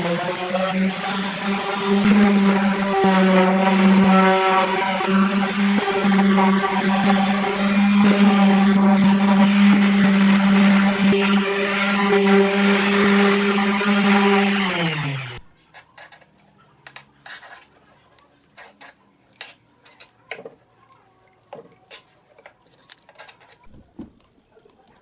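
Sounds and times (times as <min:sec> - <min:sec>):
power tool motor spinning down: 0:00.0 - 0:15.5.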